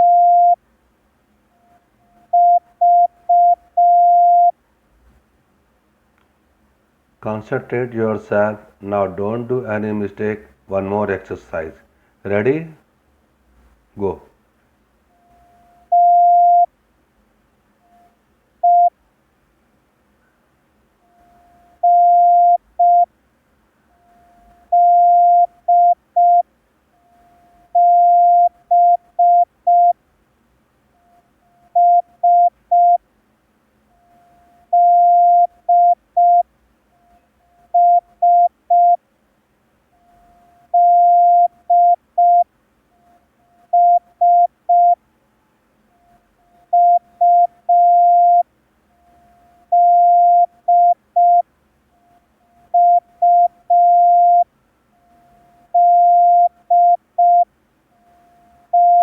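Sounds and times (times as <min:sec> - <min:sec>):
morse code beeps: 0:00.0 - 0:00.6, 0:02.4 - 0:04.5, 0:15.3 - 0:16.7, 0:17.9 - 0:18.9, 0:21.6 - 0:23.1, 0:24.0 - 0:26.4, 0:27.7 - 0:30.0, 0:31.7 - 0:33.0, 0:34.0 - 0:36.4, 0:37.8 - 0:39.0, 0:40.0 - 0:45.0, 0:46.4 - 0:48.4, 0:49.0 - 0:51.4, 0:52.7 - 0:54.5, 0:55.7 - 0:57.5, 0:58.7 - 0:59.0.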